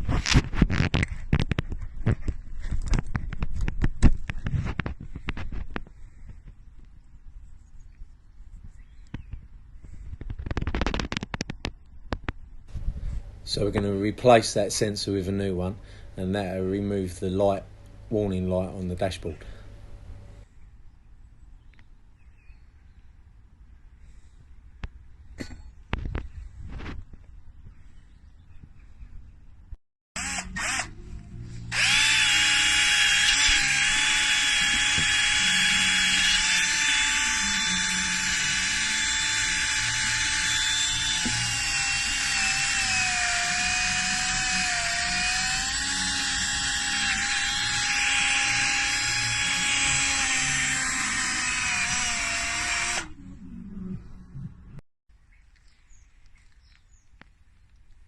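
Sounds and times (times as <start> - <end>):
electric power drill running: 30.2 - 53.2.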